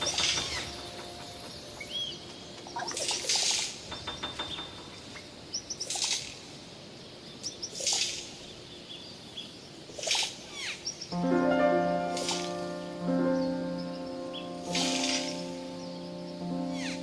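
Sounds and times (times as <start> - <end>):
high bird chirps: 0.0 - 6.4, 12.2 - 17.0
birds harsh hissing calls: 0.0 - 11.2, 12.0 - 17.0.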